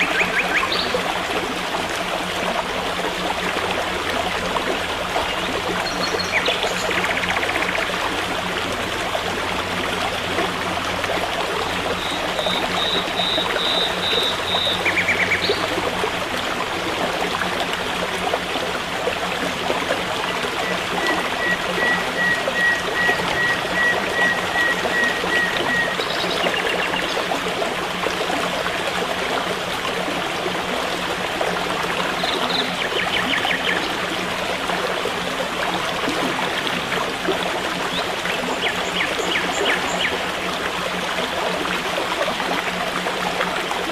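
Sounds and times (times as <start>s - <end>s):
forest stream running: 0.0s - 43.9s
high chirping bird calls: 12.4s - 15.6s.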